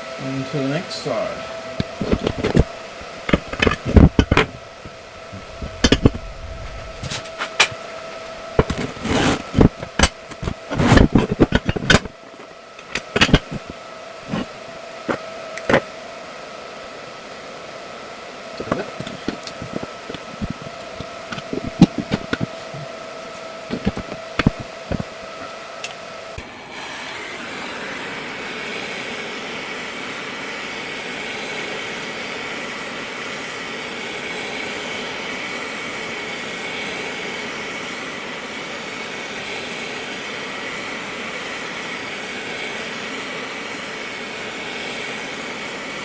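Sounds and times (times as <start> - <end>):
steady machine hum: 0.0 - 35.8
steel parts knocking and clanking: 3.3 - 4.6, 5.4 - 7.8, 9.5 - 12.2, 12.8 - 13.7, 18.7 - 22.5, 23.7 - 25.1.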